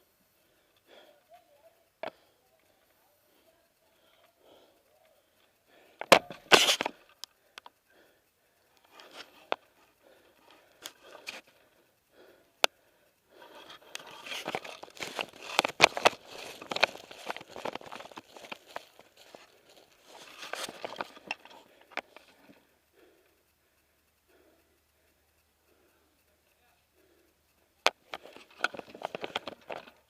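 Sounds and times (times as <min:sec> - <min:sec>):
twigs snapping: 0:13.7 - 0:22.4
footsteps crunching dry leaves: 0:14.4 - 0:21.2.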